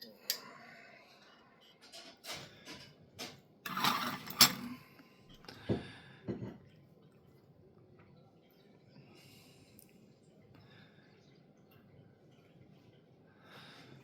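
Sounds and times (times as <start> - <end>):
utensils clicking on plate: 1.8 - 4.8.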